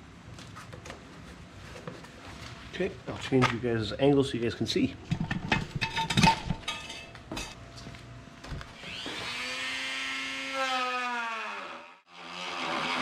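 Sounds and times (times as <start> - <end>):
rotary tool whine: 8.7 - 13.0.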